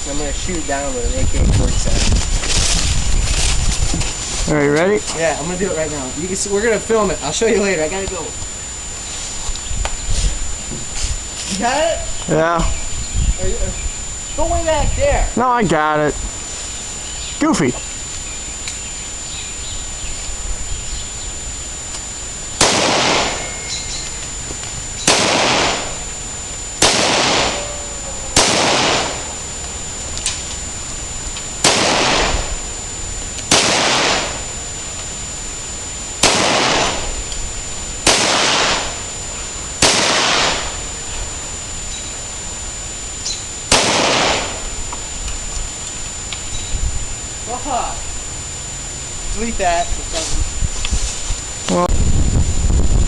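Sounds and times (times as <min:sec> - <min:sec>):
gunshot echo: 0:22.6 - 0:23.6, 0:25.1 - 0:26.0, 0:26.8 - 0:27.7, 0:28.4 - 0:29.3, 0:31.6 - 0:32.5, 0:33.5 - 0:34.4, 0:36.2 - 0:37.1, 0:38.0 - 0:39.0, 0:39.8 - 0:40.8, 0:43.7 - 0:44.7
rifle single shots: 0:22.6 - 0:23.6, 0:25.0 - 0:26.1, 0:26.8 - 0:27.7, 0:28.4 - 0:29.3, 0:31.6 - 0:32.5, 0:33.5 - 0:34.5, 0:36.2 - 0:37.2, 0:38.0 - 0:39.0, 0:39.8 - 0:40.8, 0:43.7 - 0:44.7.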